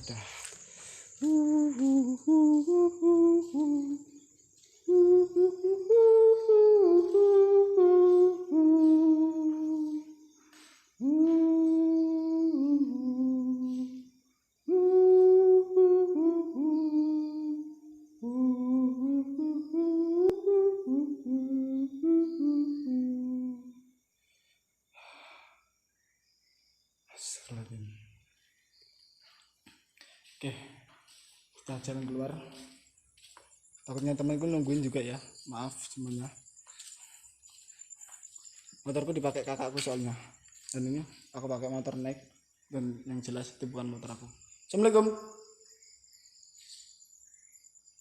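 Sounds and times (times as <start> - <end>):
person humming a melody: 1.2 - 23.8.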